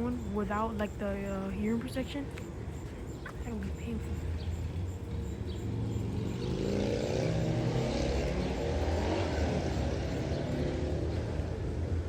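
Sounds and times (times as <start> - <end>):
distant warning sirens: 0.0 - 12.0.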